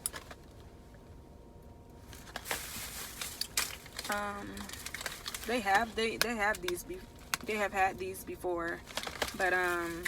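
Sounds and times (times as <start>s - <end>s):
plastic packaging crinkling: 2.0s - 7.8s, 8.6s - 10.0s.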